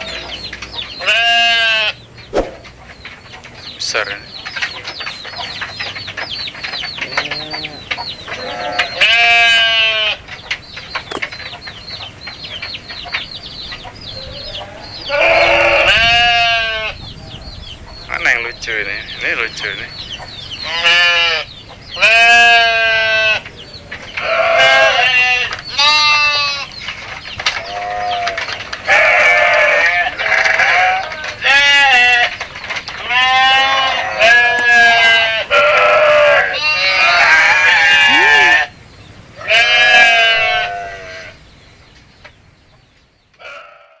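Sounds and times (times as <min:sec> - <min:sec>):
goats bleating: 0:01.0 - 0:02.0, 0:07.0 - 0:10.2, 0:15.0 - 0:17.0, 0:20.6 - 0:23.5, 0:24.2 - 0:26.8, 0:27.6 - 0:32.4, 0:33.0 - 0:38.8, 0:39.4 - 0:41.4, 0:43.4 - 0:44.0.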